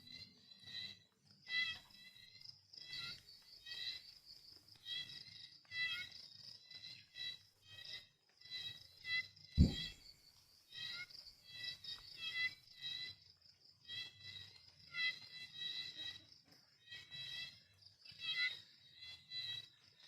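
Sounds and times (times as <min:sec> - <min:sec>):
dull thump: 0:09.6 - 0:10.0.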